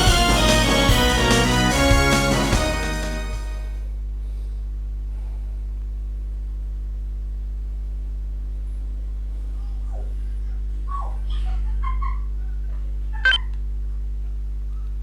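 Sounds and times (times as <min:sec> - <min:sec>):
low hum of held tones: 0:03.6 - 0:15.0.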